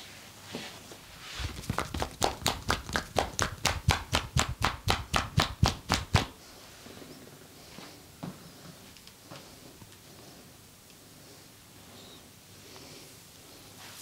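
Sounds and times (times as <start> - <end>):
percussive massage hand strikes: 1.6 - 6.4.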